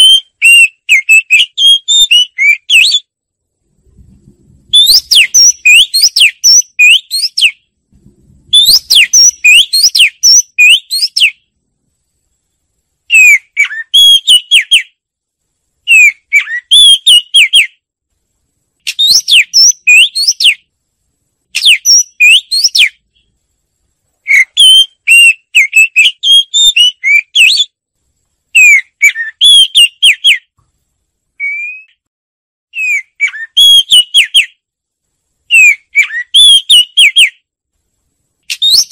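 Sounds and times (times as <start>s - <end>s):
bird singing whistled phrases: 0.0s - 3.1s, 4.7s - 7.6s, 8.5s - 11.4s, 13.1s - 15.0s, 15.9s - 17.8s, 18.9s - 20.7s, 21.6s - 23.0s, 24.2s - 27.8s, 28.5s - 30.5s, 31.4s - 32.0s, 32.8s - 34.6s, 35.5s - 37.4s, 38.5s - 38.9s.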